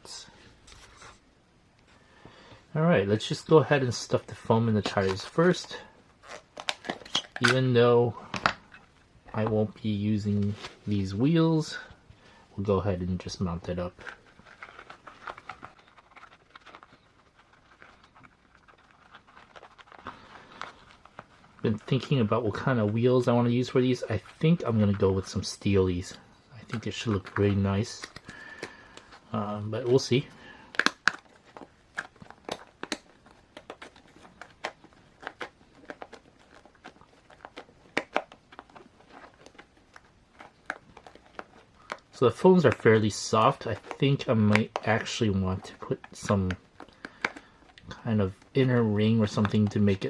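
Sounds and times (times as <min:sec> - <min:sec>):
rubber tire rustling and rubbing: 0:04.5 - 0:07.4, 0:13.8 - 0:25.4.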